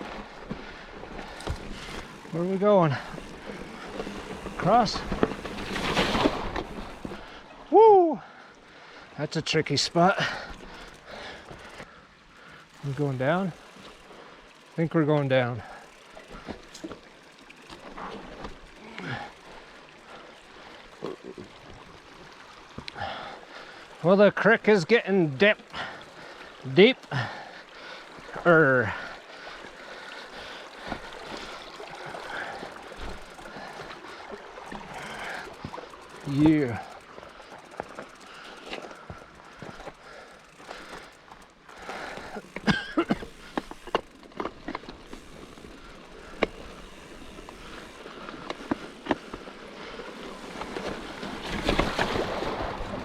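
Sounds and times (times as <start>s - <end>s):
water splashing: 0.0s - 9.0s, 9.7s - 53.0s
bike tyres rolling over rocks: 0.0s - 53.0s
bike rattling knocks: 0.5s - 7.3s.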